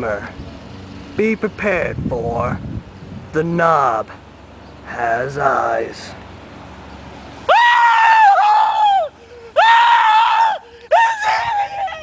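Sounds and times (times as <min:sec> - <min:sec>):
person screaming: 0:07.5 - 0:12.0.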